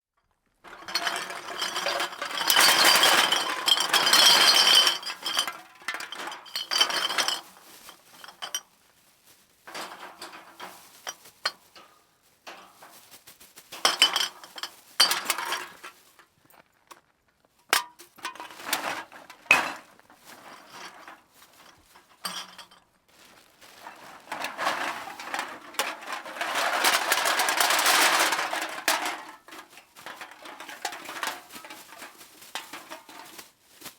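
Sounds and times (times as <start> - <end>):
cans clattering: 0.7 - 7.6, 9.7 - 11.6, 13.8 - 15.9, 17.8 - 22.8, 23.8 - 33.4.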